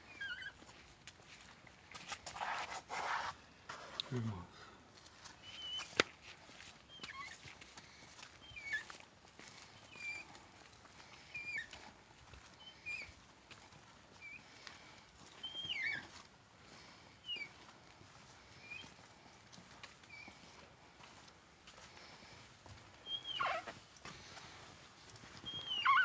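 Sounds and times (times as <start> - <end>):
hip joint squeaking: 23.2 - 23.7.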